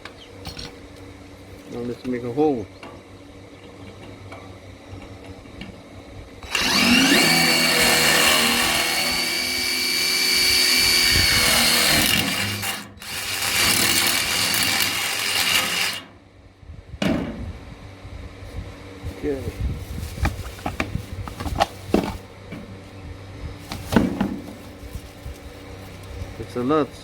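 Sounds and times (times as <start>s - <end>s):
electric drill boring metal: 6.4s - 16.1s.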